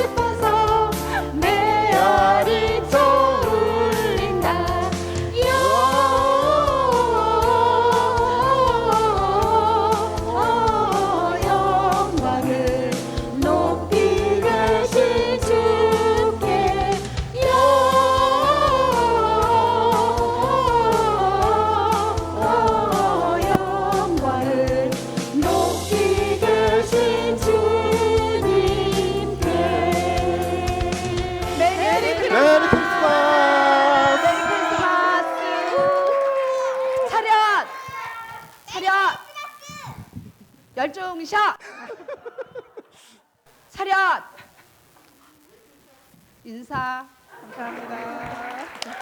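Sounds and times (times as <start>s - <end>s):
group of voices singing: 0.0s - 37.5s.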